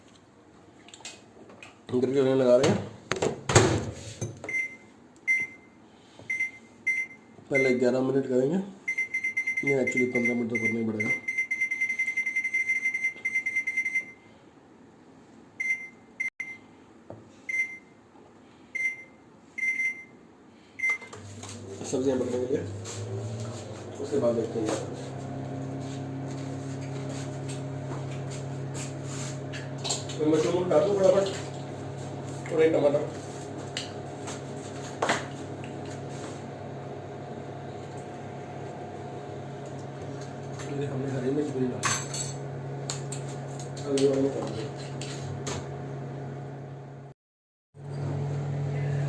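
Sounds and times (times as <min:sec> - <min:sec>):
microwave keypad beeps: 0:04.5 - 0:05.7, 0:06.3 - 0:07.8, 0:08.9 - 0:14.2, 0:15.6 - 0:16.6, 0:17.5 - 0:17.9, 0:18.8 - 0:20.1, 0:20.8 - 0:21.1
microwave oven humming: 0:20.8 - 0:47.2, 0:47.8 - 0:49.0.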